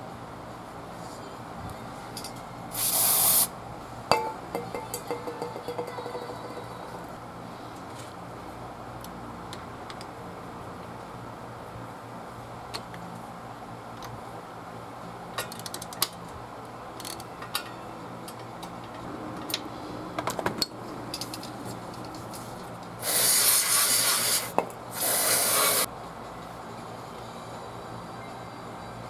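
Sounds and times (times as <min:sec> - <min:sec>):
hissing spray bursts: 0:02.7 - 0:03.5, 0:23.0 - 0:25.9.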